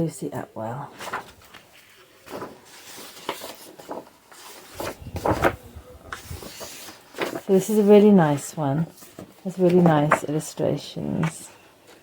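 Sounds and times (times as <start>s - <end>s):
book pages rustling: 1.0s - 8.1s.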